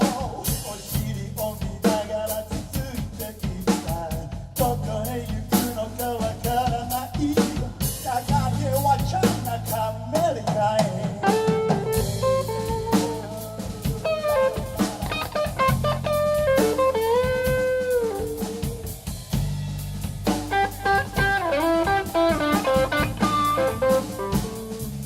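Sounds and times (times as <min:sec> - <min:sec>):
bass guitar: 0:00.0 - 0:25.0
drum kit: 0:00.0 - 0:25.0
electric guitar lead with bent notes: 0:11.2 - 0:19.0, 0:20.5 - 0:25.0.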